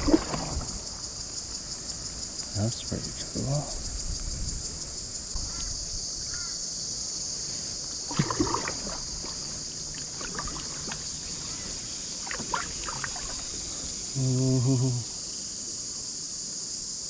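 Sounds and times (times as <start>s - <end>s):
kayak paddle splashing water: 0.0s - 0.8s, 7.9s - 13.9s
high-pitched insect drone: 0.0s - 17.0s.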